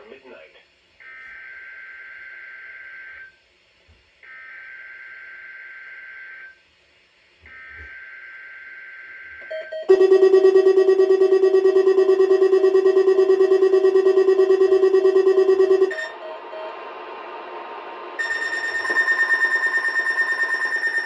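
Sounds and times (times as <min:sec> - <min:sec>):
electronic alert beeping: 0:09.4 - 0:16.8
buzzy warbling data tones: 0:09.9 - 0:16.5.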